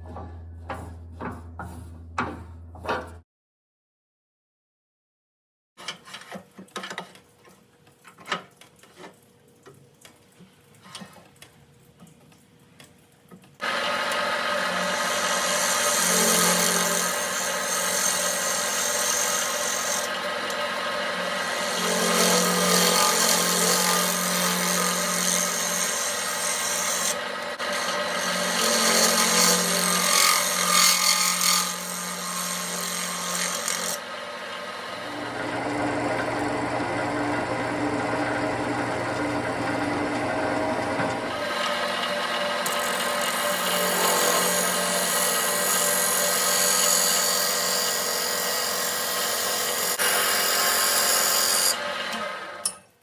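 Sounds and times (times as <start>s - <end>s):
lathe motor hum: 13.6s - 46.6s
turning tool scraping wood: 21.5s - 34.1s.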